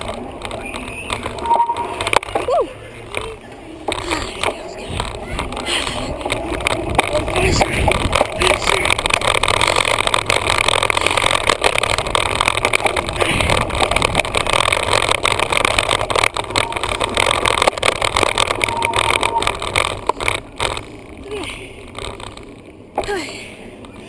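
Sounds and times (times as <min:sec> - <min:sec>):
wind buffeting microphone: 0:04.4 - 0:18.7.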